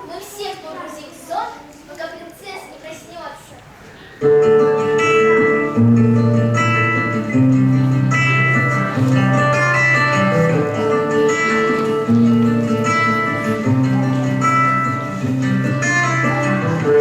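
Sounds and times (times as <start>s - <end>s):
instrumental music with bass notes: 4.3s - 17.0s.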